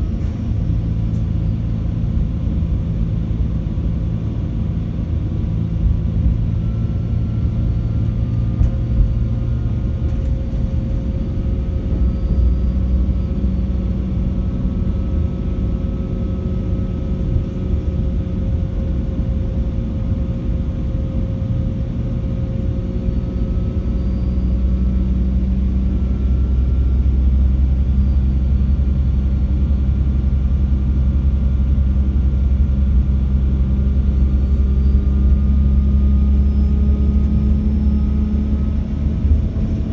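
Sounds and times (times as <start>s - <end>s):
diesel engines droning: 0.0s - 39.9s
turbocharger whine: 0.0s - 39.9s.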